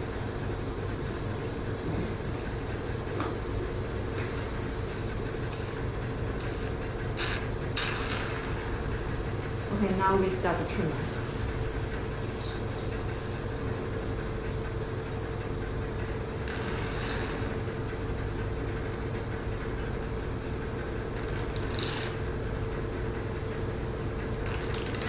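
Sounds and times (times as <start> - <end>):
vacuum pump humming: 0.0 - 25.0
short suction hisses: 6.4 - 9.0.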